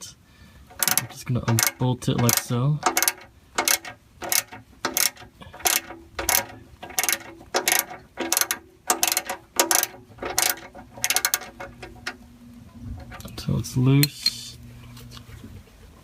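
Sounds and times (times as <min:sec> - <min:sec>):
socket ratchet clicking: 0:00.7 - 0:12.2.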